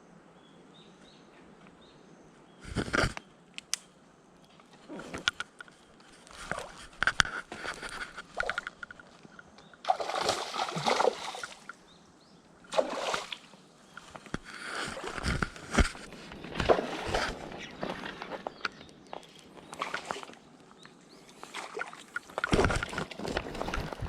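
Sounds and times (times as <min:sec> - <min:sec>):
sharp clicks: 0:02.7 - 0:03.9
water splashing and sloshing: 0:04.6 - 0:11.9, 0:12.6 - 0:24.0.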